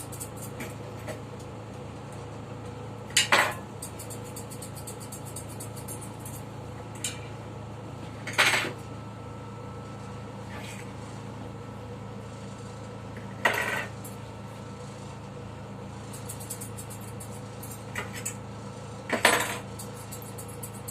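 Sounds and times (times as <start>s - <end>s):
electric clippers humming: 3.5s - 6.6s.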